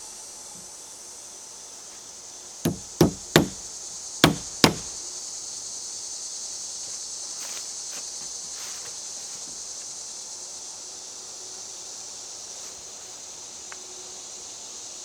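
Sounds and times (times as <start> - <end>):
hammer hitting nail into wood: 2.7 - 5.0.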